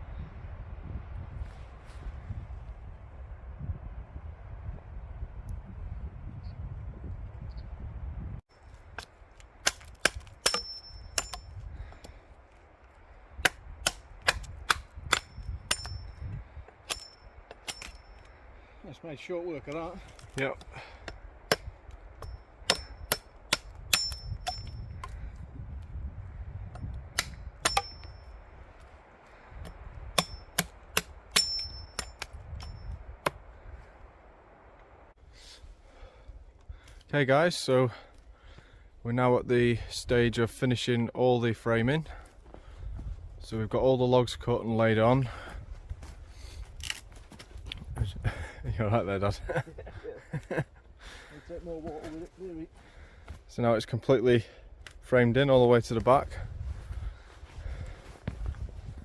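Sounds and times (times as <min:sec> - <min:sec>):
machete chopping wood: 0:09.0 - 0:12.2, 0:13.4 - 0:16.0, 0:26.8 - 0:28.1
steel blade ringing: 0:10.4 - 0:11.6, 0:15.1 - 0:18.3, 0:21.5 - 0:25.0, 0:27.2 - 0:28.6, 0:30.2 - 0:33.0.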